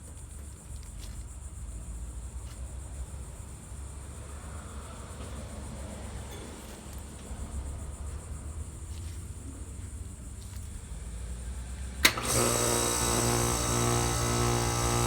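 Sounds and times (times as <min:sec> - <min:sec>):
heat pump low hum: 0:11.9 - 0:15.0.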